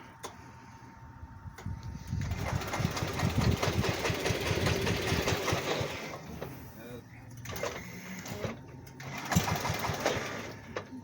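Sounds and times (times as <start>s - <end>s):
small gasoline engine running: 2.0s - 6.5s, 7.4s - 11.0s.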